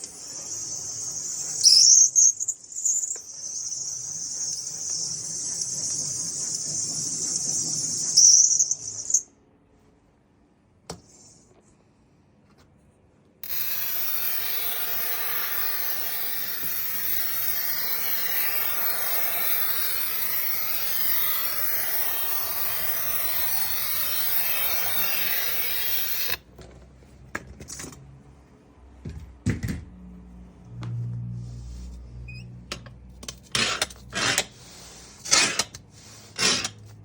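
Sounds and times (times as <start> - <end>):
power tool grinding: 2.9 - 9.2, 13.4 - 26.4.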